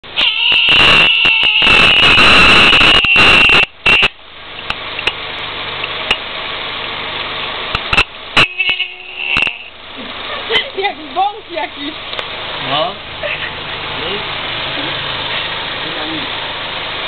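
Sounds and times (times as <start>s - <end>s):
raspy car horn: 0.2s - 4.2s, 7.9s - 9.8s.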